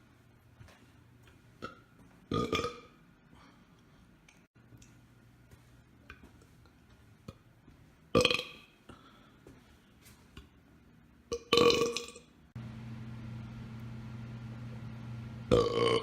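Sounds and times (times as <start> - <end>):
person burping: 1.6 - 3.0, 8.2 - 8.7, 11.3 - 12.3, 15.5 - 16.0.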